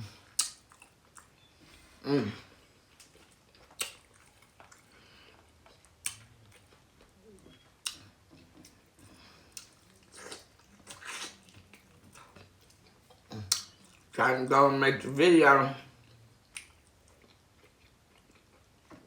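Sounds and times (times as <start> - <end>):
person chewing: 0.0 - 14.2, 15.9 - 19.0.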